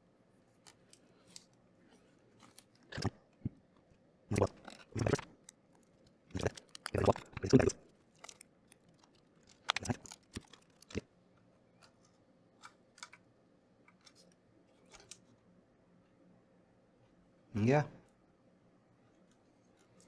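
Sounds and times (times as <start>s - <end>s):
laptop parts clicking and rattling: 4.4s - 11.1s, 11.8s - 13.3s, 13.9s - 15.3s.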